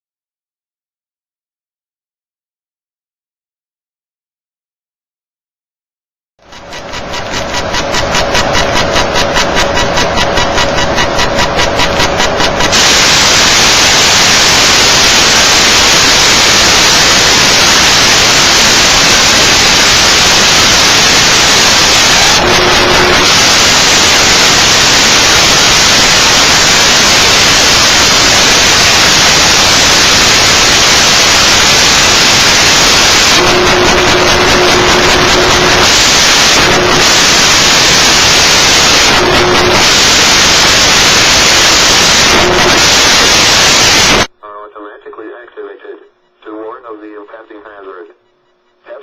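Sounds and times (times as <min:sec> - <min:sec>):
pulsing buzz: 0:06.5 - 0:44.3
radio static hiss: 0:07.3 - 0:49.0.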